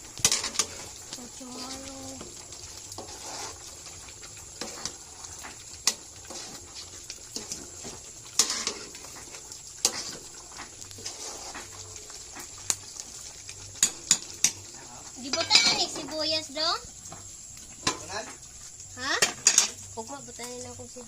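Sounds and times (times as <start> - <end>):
steady hiss: 0.0 - 21.0
utensils and dishes clinking: 15.3 - 16.1, 19.2 - 19.8.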